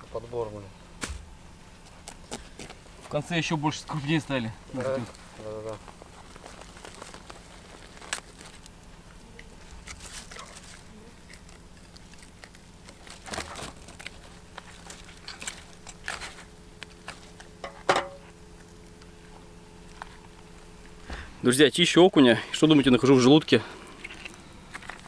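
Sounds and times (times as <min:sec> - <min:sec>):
faint steady hum: 0:00.0 - 0:25.0
plastic bag crinkling: 0:04.9 - 0:17.6.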